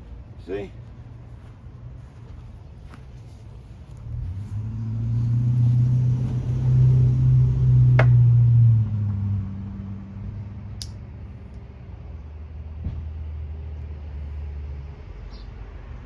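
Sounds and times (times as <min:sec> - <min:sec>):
vehicle engine hum passing by: 0:00.0 - 0:16.0
sharp tap: 0:08.0 - 0:08.2.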